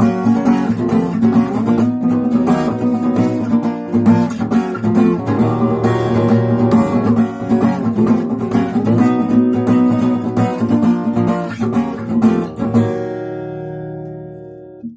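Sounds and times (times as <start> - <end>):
acoustic guitar strumming: 0.0 - 14.9.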